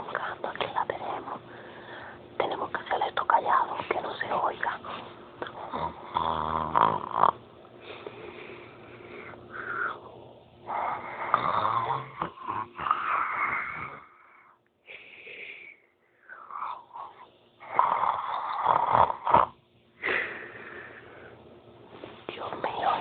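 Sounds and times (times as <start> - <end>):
person snoring: 5.4 - 21.4.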